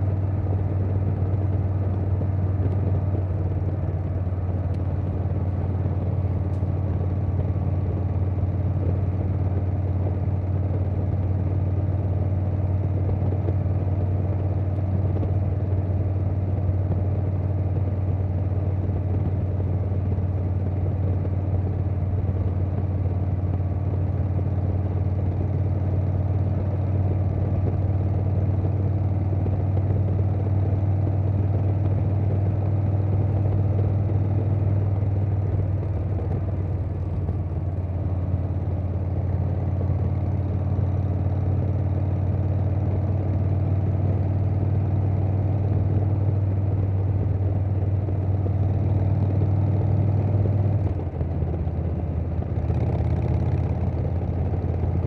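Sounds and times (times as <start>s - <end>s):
motorcycle engine rumbling: 23.0s - 49.8s.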